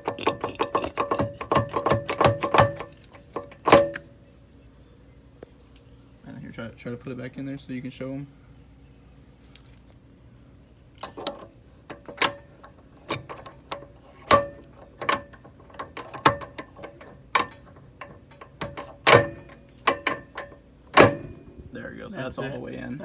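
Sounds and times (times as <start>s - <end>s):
sharp metal knocks and clicks: 0.0s - 4.1s, 11.0s - 21.6s.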